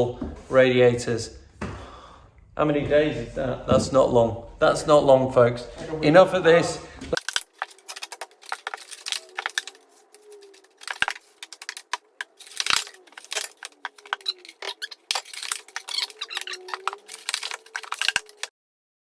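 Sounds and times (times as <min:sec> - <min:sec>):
tools clattering and rattling: 0:07.2 - 0:18.5.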